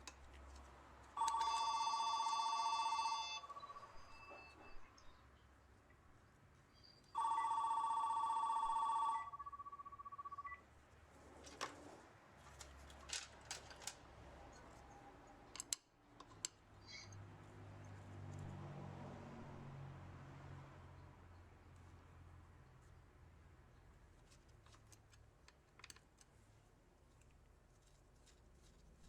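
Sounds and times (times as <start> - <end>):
telephone two-tone ring: 1.2 - 4.7, 7.2 - 10.6.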